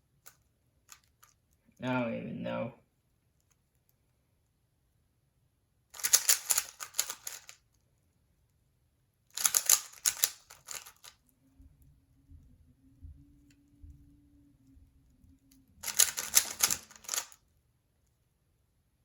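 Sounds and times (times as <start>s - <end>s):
faint low hum: 0.0s - 19.0s
rapid plastic clicking of puzzle cube: 0.1s - 1.6s, 5.9s - 8.6s, 9.3s - 11.3s, 15.8s - 18.2s.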